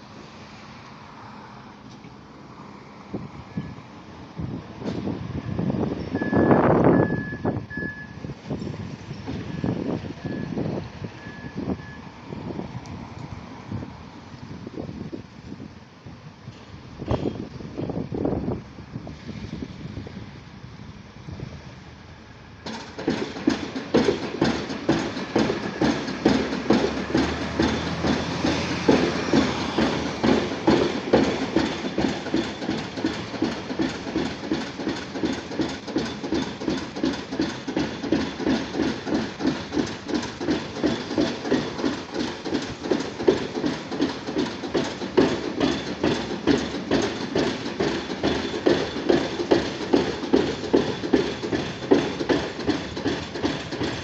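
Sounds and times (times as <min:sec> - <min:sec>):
hydraulic hammer striking a pile: 0:22.6 - 0:54.0.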